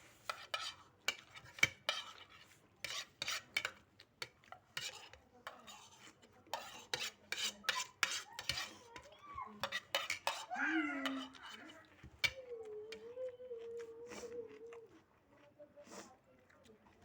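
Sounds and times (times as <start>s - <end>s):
spoons clinking against plates: 0.2s - 13.1s.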